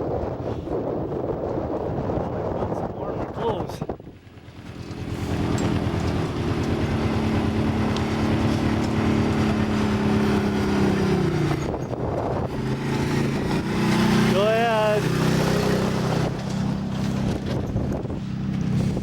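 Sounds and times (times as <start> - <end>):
wind noise: 0.0 - 19.0
vehicle engine running: 3.5 - 19.0.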